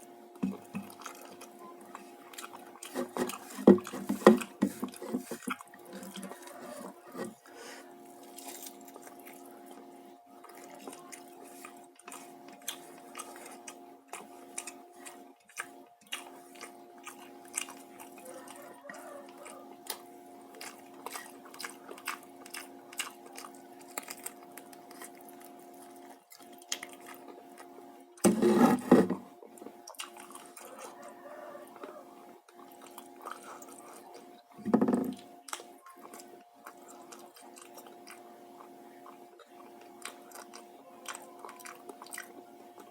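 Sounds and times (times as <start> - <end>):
low steady hum: 0.0 - 42.9
person chewing crunchy food: 0.0 - 42.9.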